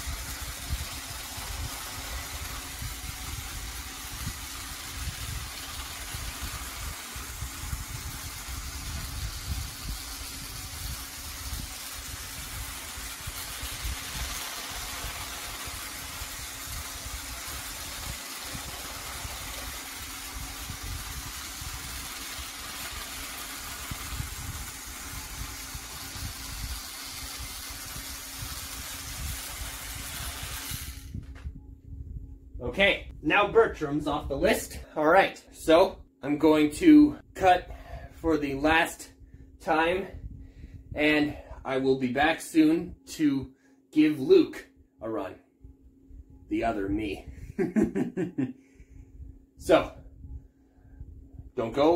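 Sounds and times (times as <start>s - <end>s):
toy wheels rumbling on track: 0.0s - 31.2s
toy train motor whirring: 0.0s - 31.3s.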